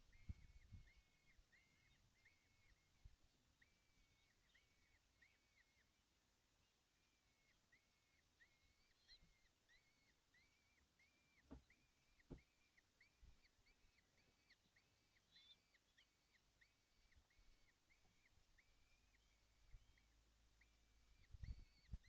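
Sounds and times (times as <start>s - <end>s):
faint bird calls: 0.0s - 22.0s.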